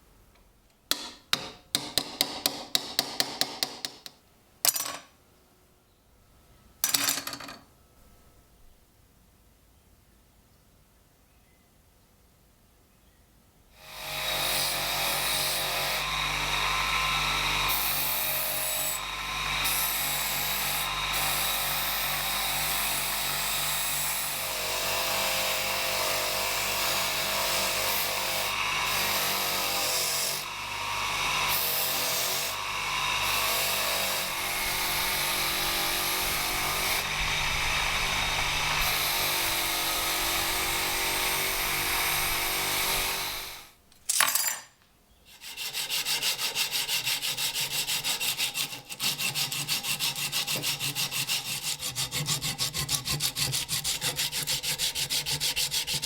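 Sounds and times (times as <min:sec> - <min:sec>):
electric power tool grinding: 0:13.9 - 0:43.7.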